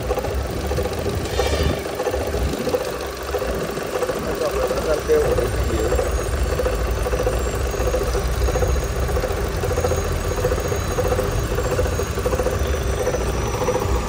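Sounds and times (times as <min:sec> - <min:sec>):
car engine idling: 0:00.0 - 0:14.0
repeating mechanical noise: 0:00.0 - 0:14.0.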